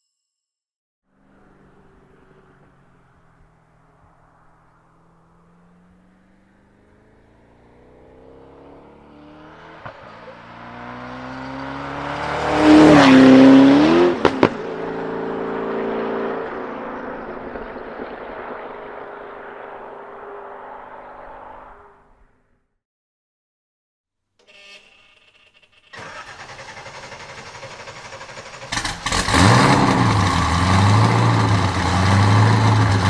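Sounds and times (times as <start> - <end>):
sports car accelerating past: 1.2 - 22.1.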